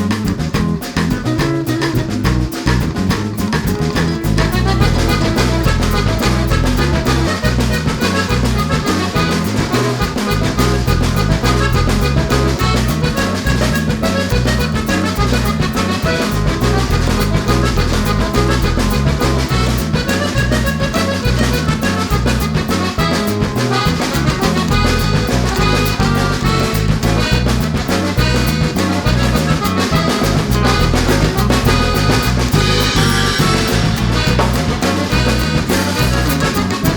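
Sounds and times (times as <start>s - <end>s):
upbeat accordion and brass music: 0.0s - 36.9s.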